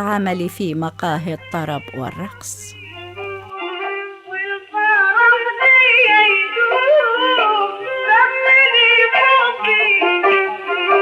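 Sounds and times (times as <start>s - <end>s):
woman singing ornamented melody: 0.0s - 3.4s.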